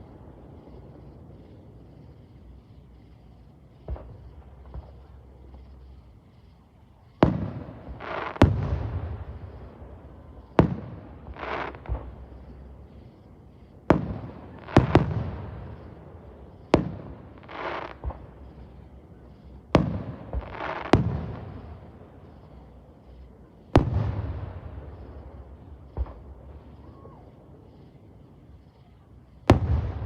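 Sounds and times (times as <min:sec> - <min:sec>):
fireworks hissing bursts: 0:00.0 - 0:30.0
fireworks bangs with echo: 0:07.2 - 0:09.8, 0:13.9 - 0:16.0, 0:19.7 - 0:21.9, 0:23.7 - 0:27.2, 0:29.4 - 0:30.0.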